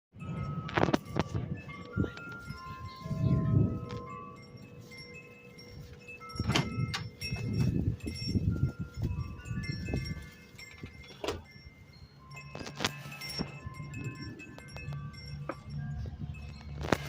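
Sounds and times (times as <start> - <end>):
wind chimes ringing: 0.2 - 17.0
low rumbling noise: 11.5 - 17.0.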